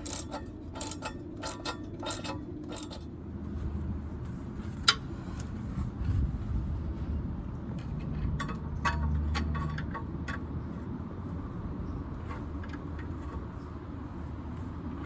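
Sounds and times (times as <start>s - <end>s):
socket ratchet clicking: 0.0s - 3.0s.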